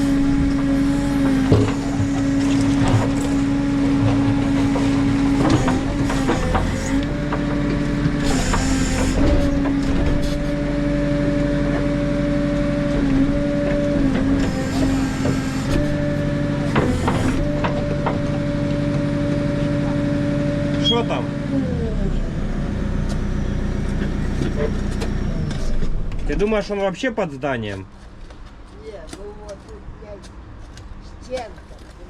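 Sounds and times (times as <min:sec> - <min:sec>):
knocks and clanks: 0:00.0 - 0:10.6, 0:12.8 - 0:20.0
diesel engine under load: 0:00.0 - 0:28.5.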